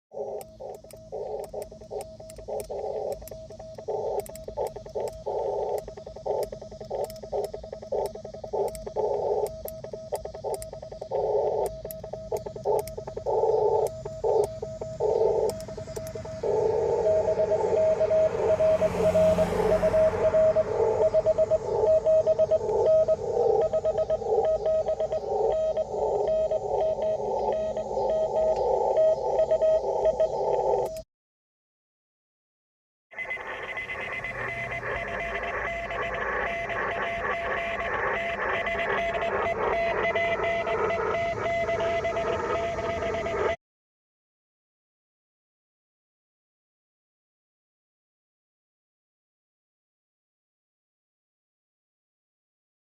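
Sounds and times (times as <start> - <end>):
sharp radio clicks: 0.1 - 18.0, 33.2 - 43.5
morse code keyed tone: 0.1 - 31.0, 33.2 - 43.6.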